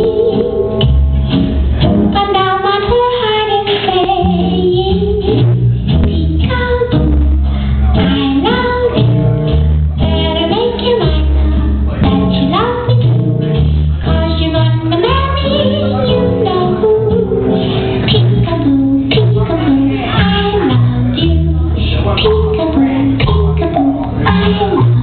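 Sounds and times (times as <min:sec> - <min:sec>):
heavy bass line: 0:00.0 - 0:03.3, 0:03.9 - 0:25.0
pop song with female vocal: 0:02.2 - 0:05.4, 0:07.9 - 0:09.1, 0:10.0 - 0:13.2, 0:14.0 - 0:25.0.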